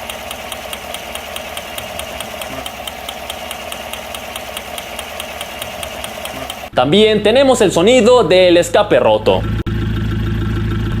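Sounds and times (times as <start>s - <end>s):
engine idling: 0.0s - 6.7s, 9.2s - 11.0s
rapid ignition spark ticking: 0.0s - 6.7s.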